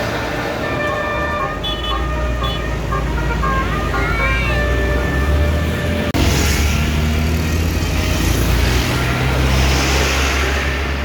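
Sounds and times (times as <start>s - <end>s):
bus engine rumbling: 0.0s - 11.0s.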